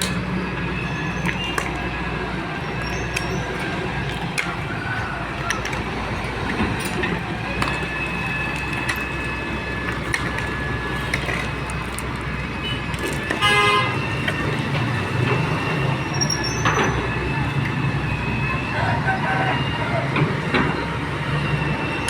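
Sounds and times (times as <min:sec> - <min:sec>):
excavator diesel engine: 0:00.0 - 0:22.0
street traffic: 0:00.0 - 0:22.0
vehicle horn toot: 0:12.6 - 0:14.2.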